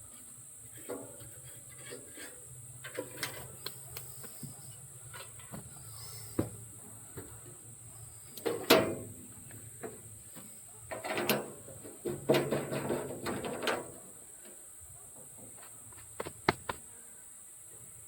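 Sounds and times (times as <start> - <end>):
high insect drone: 0.0 - 18.0
clattering knocks and scrapes: 0.7 - 6.6, 8.4 - 16.8.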